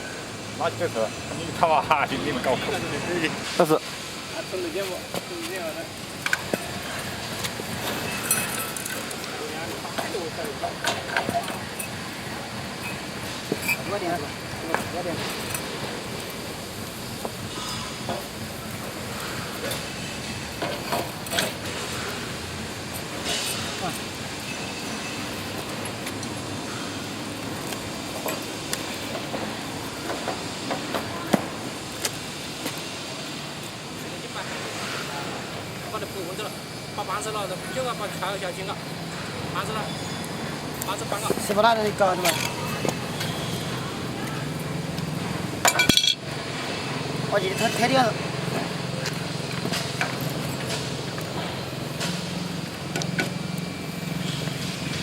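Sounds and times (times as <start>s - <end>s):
steady background noise: 0.0s - 55.0s
drilling rig engine running: 0.1s - 4.7s, 32.9s - 55.0s
tools knocking and clinking: 45.6s - 46.2s.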